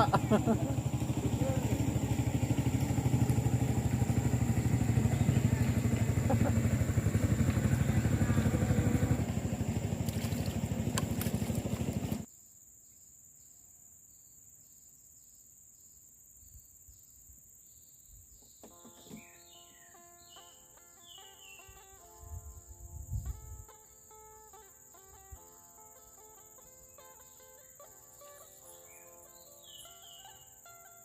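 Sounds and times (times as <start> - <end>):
small engine running: 0.0 - 12.3.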